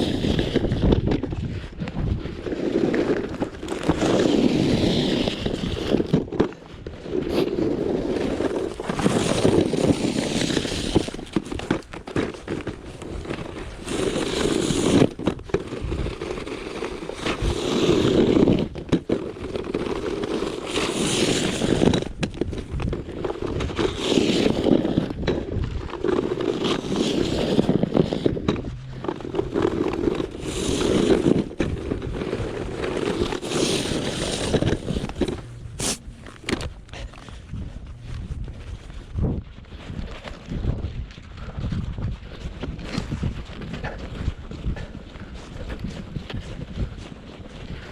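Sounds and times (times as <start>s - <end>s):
snow shovel scraping pavement: 0.0s - 0.9s, 2.1s - 37.4s.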